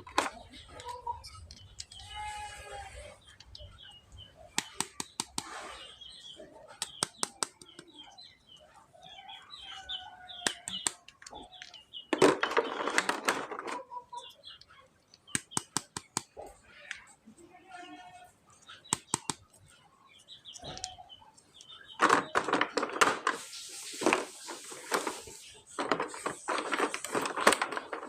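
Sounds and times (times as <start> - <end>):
bird chirps: 3.1 - 12.9, 13.8 - 17.2, 17.9 - 22.4
packaging rustle: 22.2 - 28.0.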